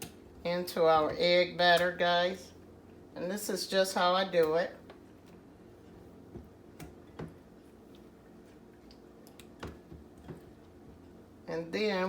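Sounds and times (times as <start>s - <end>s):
faint clicks and taps: 4.4s - 11.2s.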